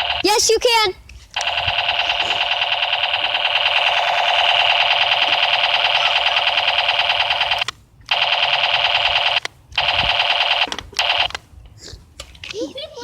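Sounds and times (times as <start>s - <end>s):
electronic alarm buzzer: 0.0s - 0.3s, 1.4s - 11.3s.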